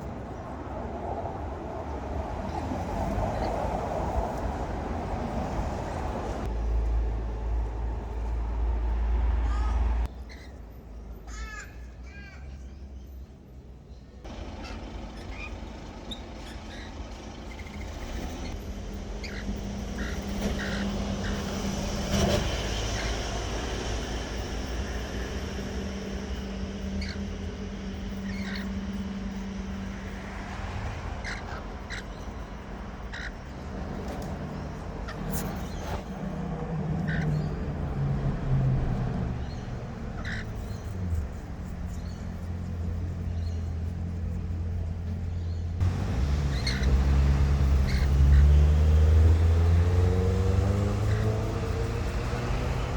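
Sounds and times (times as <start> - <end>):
low engine rumble: 12.6 - 52.9
bird calls: 13.9 - 36.2, 36.9 - 37.8, 39.0 - 52.9.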